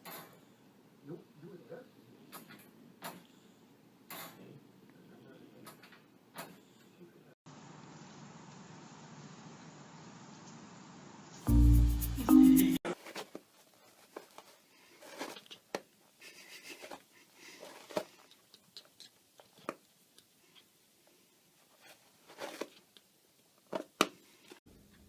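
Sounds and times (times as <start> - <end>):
burst of music: 11.4 - 12.8
scratches and rustles: 12.9 - 19.8, 20.4 - 23.0.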